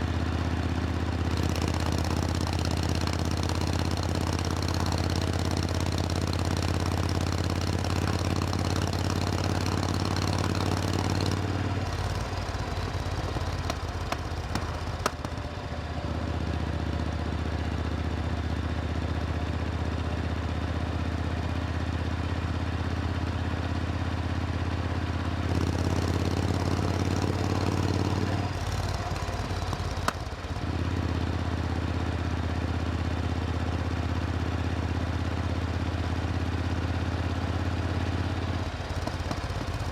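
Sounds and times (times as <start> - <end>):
motorcycle engine running low: 0.0 - 17.3, 25.3 - 39.9.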